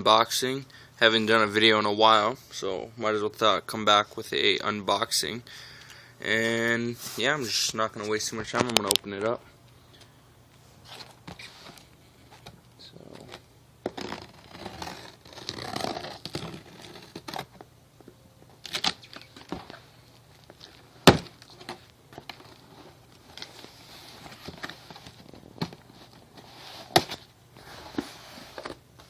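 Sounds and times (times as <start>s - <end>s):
packing material crinkling: 13.2s - 17.6s, 18.6s - 27.3s.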